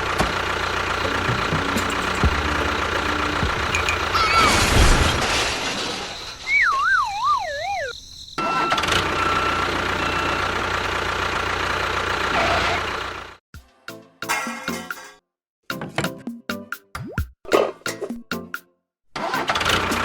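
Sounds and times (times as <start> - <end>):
wavering falling whistle tone: 6.2 - 8.8.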